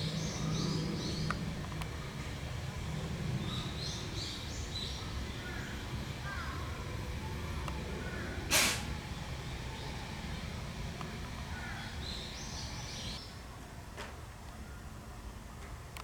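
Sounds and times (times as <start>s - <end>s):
small birds chirping: 0.0s - 13.4s
puma sneezing: 8.5s - 9.1s.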